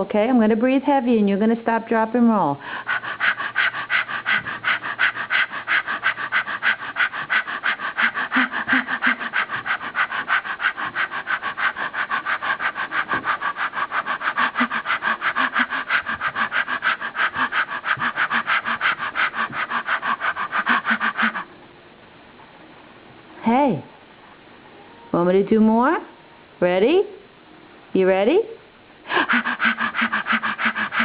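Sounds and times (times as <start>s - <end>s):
person panting rhythmically: 2.6s - 21.5s, 29.0s - 31.0s.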